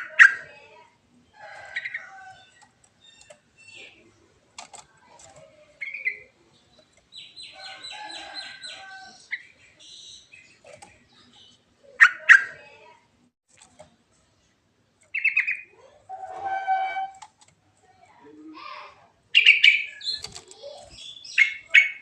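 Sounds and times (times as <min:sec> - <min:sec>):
bird chirping: 0:01.2 - 0:04.1, 0:05.7 - 0:12.6, 0:15.0 - 0:16.2, 0:19.3 - 0:22.0.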